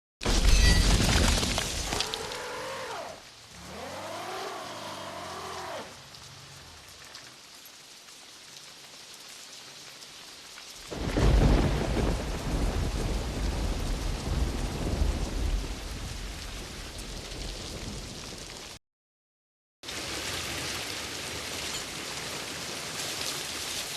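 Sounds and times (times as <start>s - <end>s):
steady rain: 0.3s - 18.8s, 19.8s - 23.9s
drawn-out rising and falling calls: 2.0s - 6.0s
low thunder rumbling: 10.9s - 18.6s
thunderclap: 10.9s - 18.7s.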